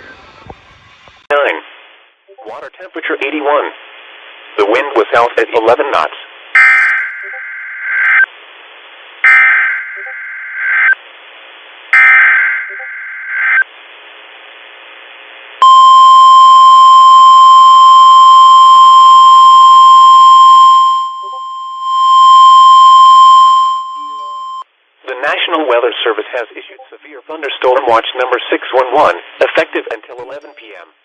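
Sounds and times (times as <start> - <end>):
loud steady warning alarm tone: 6.6 - 8.3, 9.2 - 11.0, 12.0 - 13.6, 15.6 - 24.6.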